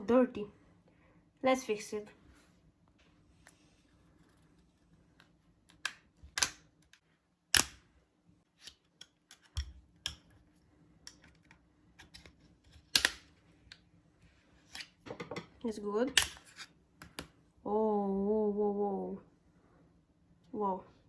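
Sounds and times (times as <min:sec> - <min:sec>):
clicks and taps of small tools: 0:07.6 - 0:07.8, 0:08.6 - 0:10.4, 0:11.1 - 0:13.8, 0:17.0 - 0:17.3.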